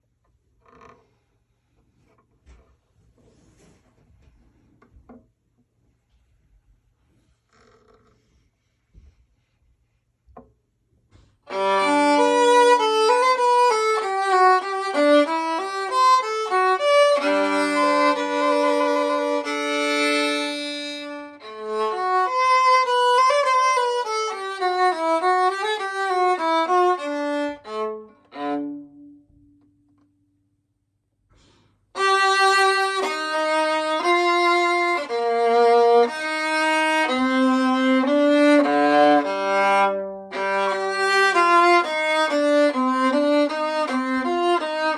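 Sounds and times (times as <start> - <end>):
bowed viola melody: 11.4 - 29.8, 31.9 - 44.9.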